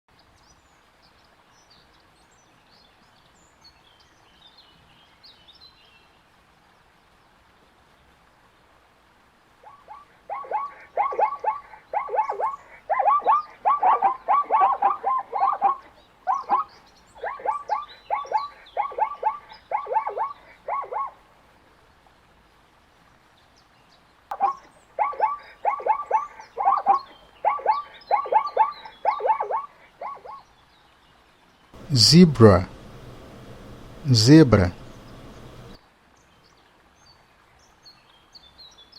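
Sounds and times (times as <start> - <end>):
zebra barking yelps: 9.6 - 21.2, 24.3 - 30.4, 31.8 - 35.8.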